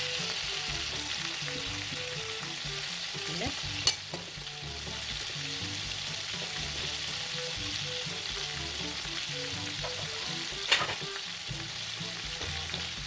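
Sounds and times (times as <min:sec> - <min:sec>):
chicken deep-frying in oil: 0:00.0 - 0:13.0.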